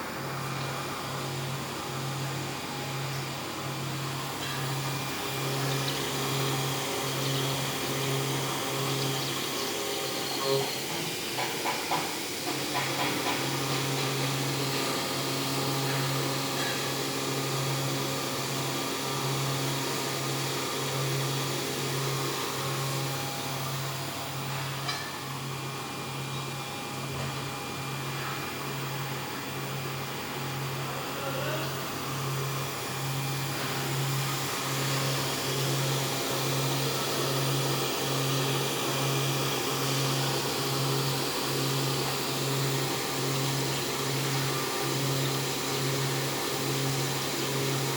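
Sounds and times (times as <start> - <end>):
cnc machine motor drone: 0.0 - 47.9.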